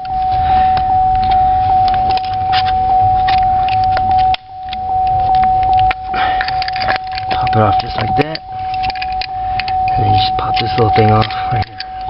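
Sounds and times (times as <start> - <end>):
steady high electronic tone: 0.0 - 12.0
metallic clicking and jingling: 5.6 - 12.0.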